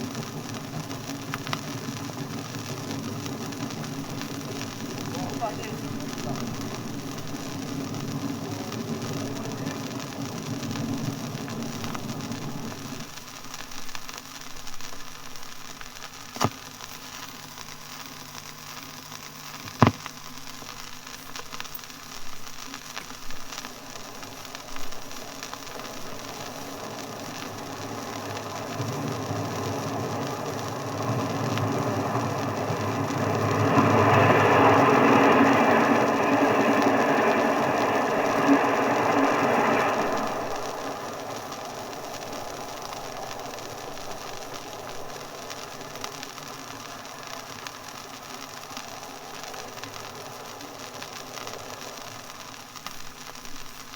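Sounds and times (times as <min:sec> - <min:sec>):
low rumble: 0:00.0 - 0:13.2, 0:22.4 - 0:47.9
broad rushing noise: 0:00.0 - 0:13.4, 0:19.6 - 0:53.9.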